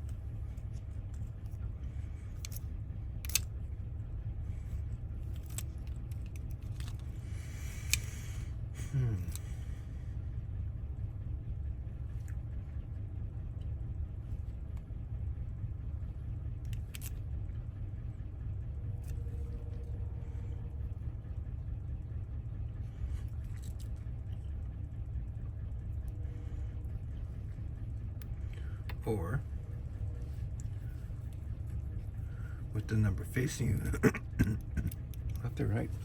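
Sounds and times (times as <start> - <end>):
low background rumble: 0.0 - 36.0
small metal lock wafers clicking: 2.3 - 3.5, 5.2 - 8.2, 16.6 - 17.2.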